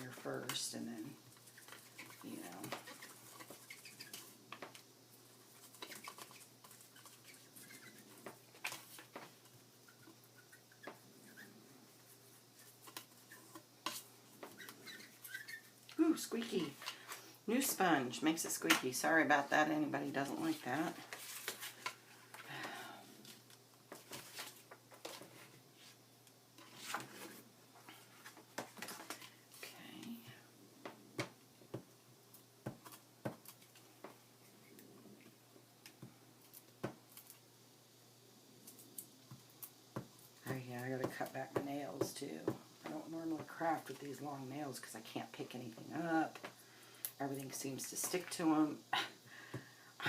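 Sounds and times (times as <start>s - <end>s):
sponge squeaking: 1.4s - 4.4s, 5.6s - 8.2s, 9.8s - 11.6s, 14.4s - 15.8s
sponge rubbing on paper: 5.7s - 8.2s.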